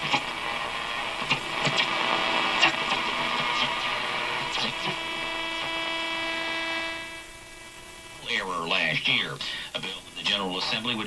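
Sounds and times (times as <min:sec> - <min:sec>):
radio broadcast speech: 0:00.0 - 0:07.1, 0:08.0 - 0:11.0
crackles and clicks: 0:00.0 - 0:09.2
radio static hiss: 0:00.0 - 0:11.0.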